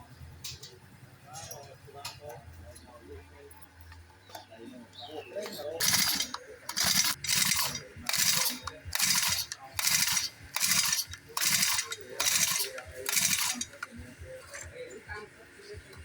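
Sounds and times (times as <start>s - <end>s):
hand tool scraping back and forth: 5.8s - 14.7s.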